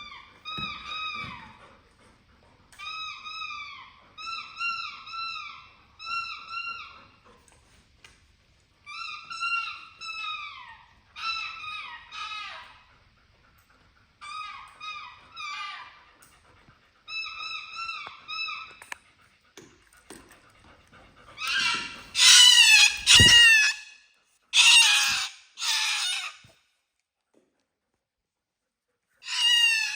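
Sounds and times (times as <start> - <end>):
pet whining calls: 0.0 - 7.3, 8.9 - 12.9, 14.2 - 19.0, 21.1 - 24.0, 24.6 - 26.5, 29.2 - 29.9.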